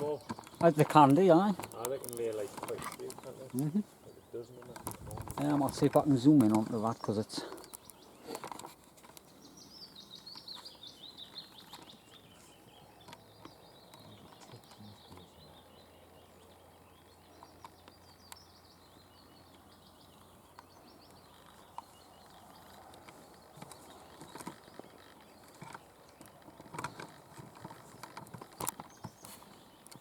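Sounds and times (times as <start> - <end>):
soft outdoor background: 0.0 - 30.0
songbird singing: 0.0 - 30.0
small clicks: 4.6 - 9.3, 20.5 - 30.0.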